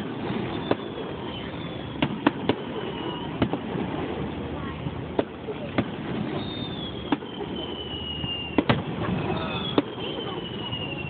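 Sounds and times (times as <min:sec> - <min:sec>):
falling firework whistles: 0:00.0 - 0:03.8, 0:05.8 - 0:11.0
fireworks bangs: 0:00.0 - 0:04.3, 0:05.1 - 0:11.0.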